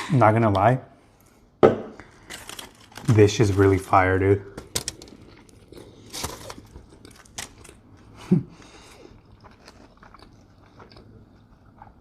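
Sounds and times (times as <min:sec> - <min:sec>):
person chewing food: 0:04.8 - 0:12.0.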